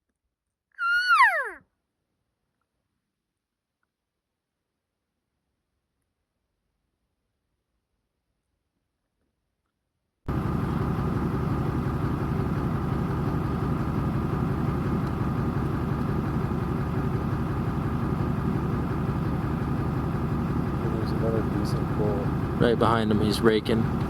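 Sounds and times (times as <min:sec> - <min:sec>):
vehicle engine idling: 0:10.3 - 0:24.0.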